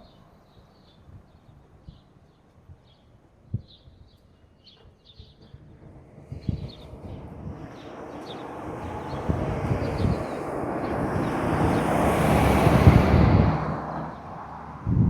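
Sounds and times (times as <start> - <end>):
road vehicle passing by: 5.8 - 15.0.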